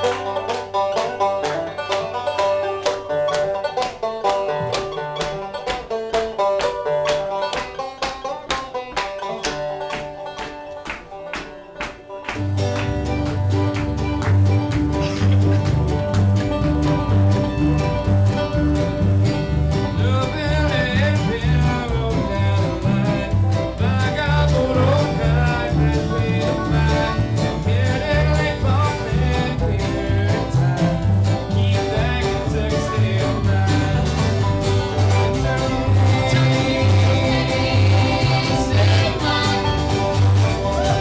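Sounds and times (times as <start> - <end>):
picked acoustic strings: 0.0 - 41.0
pulsing bass beat: 12.4 - 41.0.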